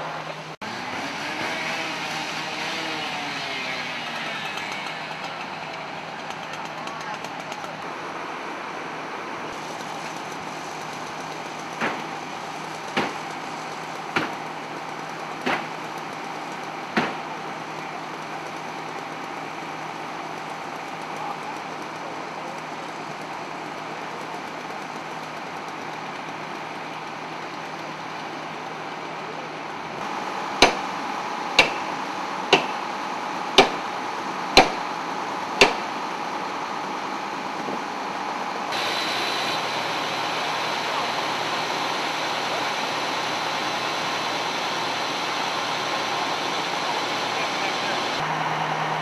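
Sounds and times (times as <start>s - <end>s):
vehicle engine running: 0.0s - 49.0s
sharp knocks: 30.6s - 30.8s, 31.6s - 31.9s, 32.5s - 32.8s, 33.6s - 33.8s, 34.6s - 34.8s.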